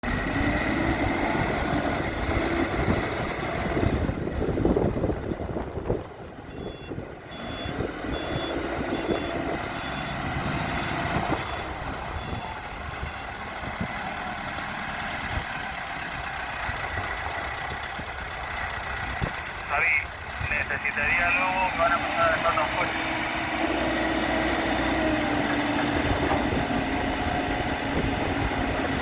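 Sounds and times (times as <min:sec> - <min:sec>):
diesel engine running: 0:00.0 - 0:29.0
reversing alarm beeps: 0:06.5 - 0:10.2, 0:10.8 - 0:12.7.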